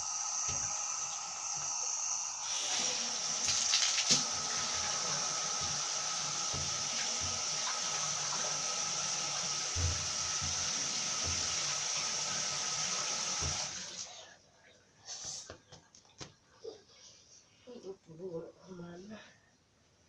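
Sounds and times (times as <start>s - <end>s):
water running into a bathtub: 0.0s - 14.3s.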